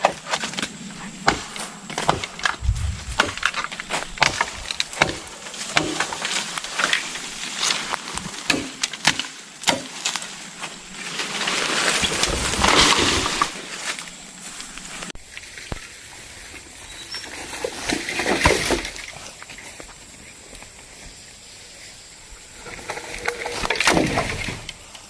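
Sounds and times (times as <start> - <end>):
rustling noise: 0.3 - 8.5, 10.1 - 15.2
bamboo chopping knocks and cracks: 1.2 - 2.3, 3.2 - 7.0, 8.2 - 10.2.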